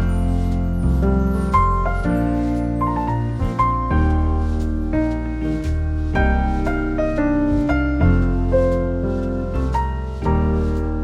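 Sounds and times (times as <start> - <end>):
piano music: 0.0 - 11.0.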